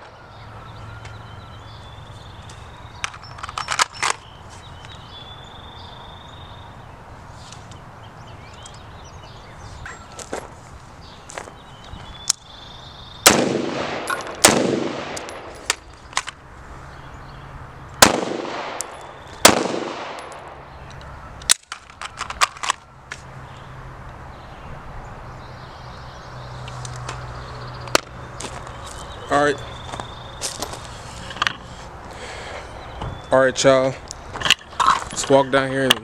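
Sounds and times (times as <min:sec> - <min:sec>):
loud gunshots with echo: 0:13.2 - 0:15.5, 0:18.0 - 0:20.6.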